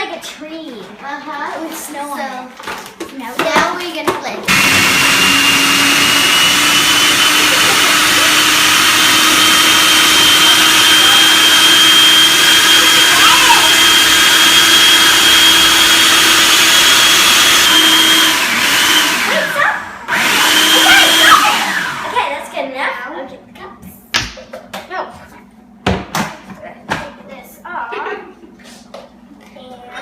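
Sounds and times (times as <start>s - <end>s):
blender running at high speed: 4.5s - 22.3s.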